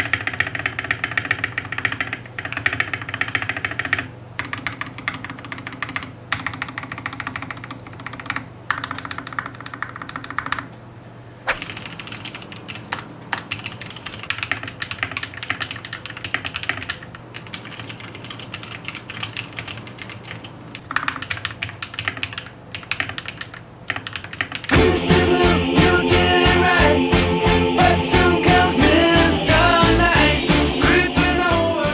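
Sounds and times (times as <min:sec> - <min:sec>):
typing on mechanical keyboard: 0:00.0 - 0:10.7, 0:11.5 - 0:24.8.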